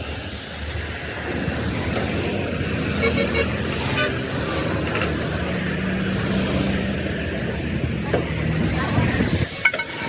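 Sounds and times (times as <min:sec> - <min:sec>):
road traffic: 0:00.0 - 0:10.0
car horn toots: 0:03.0 - 0:04.2.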